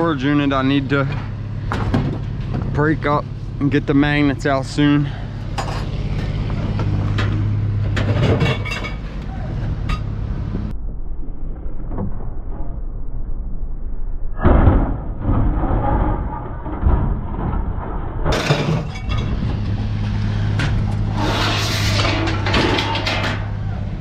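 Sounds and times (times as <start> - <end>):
steady low hum: 0.0 - 24.0
metal clattering: 5.5 - 9.2, 14.6 - 23.7
scrap metal crashing onto pile: 14.6 - 23.7.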